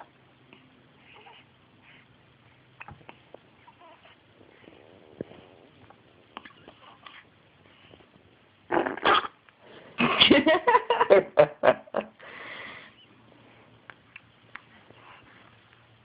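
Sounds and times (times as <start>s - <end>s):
soft rushing noise: 1.9s - 8.6s
baby hiccups and grunts: 8.7s - 9.4s.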